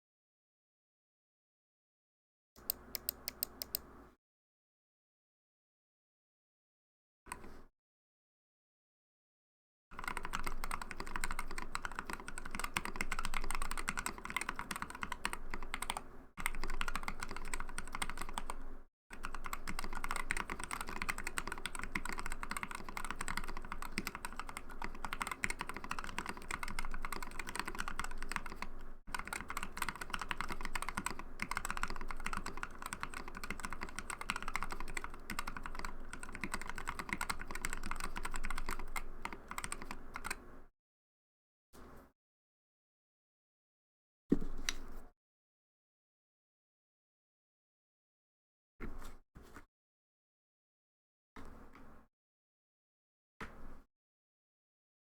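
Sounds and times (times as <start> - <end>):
typing on mechanical keyboard: 10.0 - 40.4.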